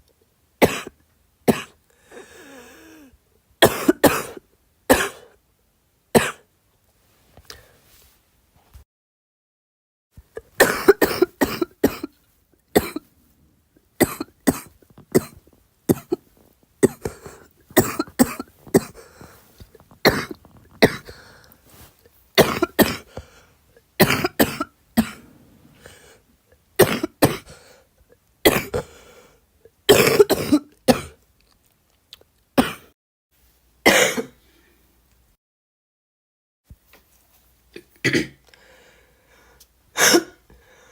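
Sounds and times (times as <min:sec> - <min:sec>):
girl coughing: 0:03.6 - 0:05.3, 0:10.4 - 0:12.1, 0:12.8 - 0:13.0, 0:14.0 - 0:19.3, 0:20.0 - 0:21.2, 0:22.4 - 0:23.1, 0:24.0 - 0:25.3, 0:26.8 - 0:27.5, 0:28.5 - 0:28.9, 0:29.9 - 0:31.2, 0:32.6 - 0:32.9, 0:33.9 - 0:34.4, 0:40.0 - 0:40.4.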